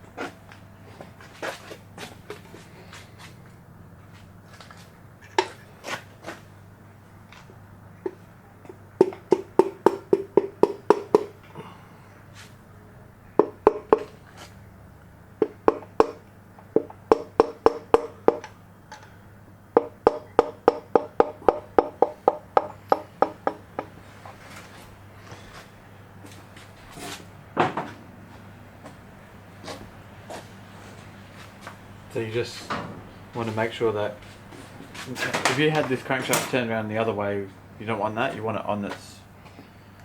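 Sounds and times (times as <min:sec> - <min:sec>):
sharp metallic taps of hand tools: 0:08.0 - 0:11.4, 0:15.4 - 0:19.1, 0:19.8 - 0:24.0.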